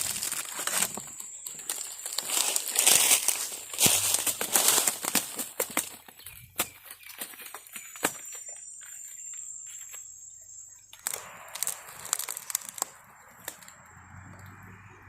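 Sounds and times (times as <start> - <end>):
handling clicks and knocks: 0.3 - 8.5
high insect drone: 8.0 - 15.0.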